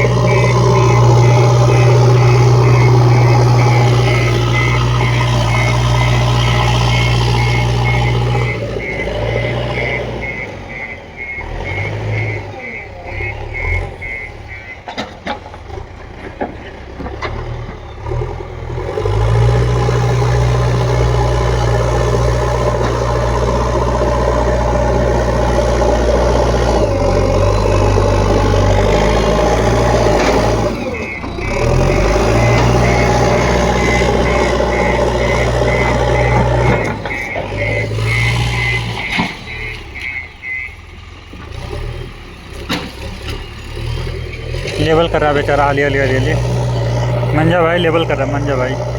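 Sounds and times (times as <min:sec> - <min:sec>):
reversing alarm beeping: 0:00.0 - 0:15.4, 0:19.0 - 0:41.0, 0:44.7 - 0:48.9
diesel engine working: 0:00.0 - 0:48.9.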